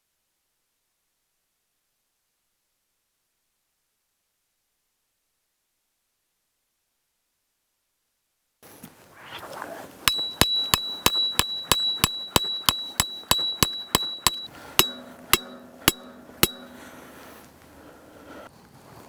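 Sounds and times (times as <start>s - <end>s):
hammer striking metal stake: 10.1s - 17.3s.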